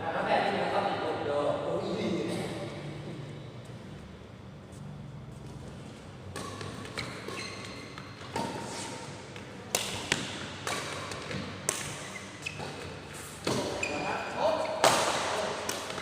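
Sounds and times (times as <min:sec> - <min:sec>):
ball thumping on indoor court: 0:05.4 - 0:14.1, 0:14.7 - 0:16.0
shoe squeaks: 0:06.4 - 0:09.1, 0:10.7 - 0:14.8.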